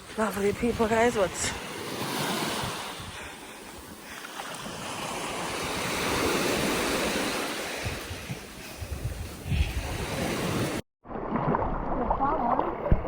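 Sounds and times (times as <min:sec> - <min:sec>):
wind buffeting microphone: 0:00.0 - 0:04.0, 0:05.2 - 0:10.8
sea waves washing onto beach: 0:00.0 - 0:10.8.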